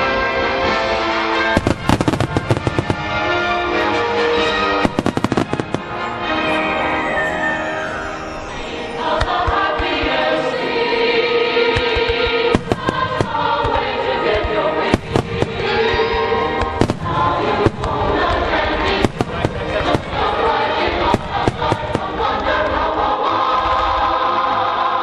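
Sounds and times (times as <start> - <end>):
choral music: 0.0 - 25.0
firework shells bursting: 11.8 - 20.4.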